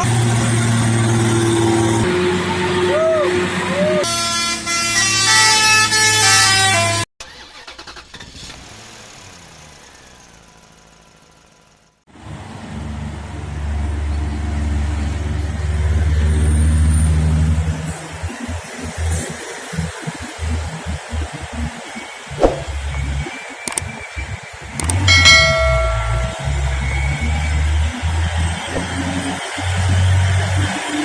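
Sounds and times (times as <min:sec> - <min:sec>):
diesel truck engine droning: 0:00.0 - 0:04.5, 0:10.5 - 0:31.0
truck air horn melody: 0:04.0 - 0:07.0.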